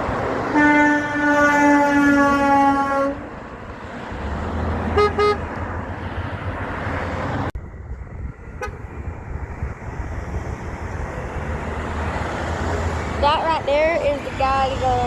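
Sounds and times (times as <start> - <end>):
road noise: 0.0 - 15.0
truck engine passing: 0.0 - 15.0
horn toot: 0.5 - 3.2, 4.9 - 5.5.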